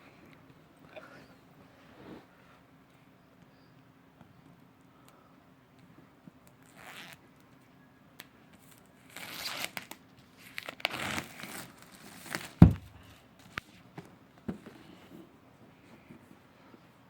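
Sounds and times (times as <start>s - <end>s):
plastic wrapping tearing and crinkling: 8.6s - 13.2s
box thump: 12.6s - 13.2s.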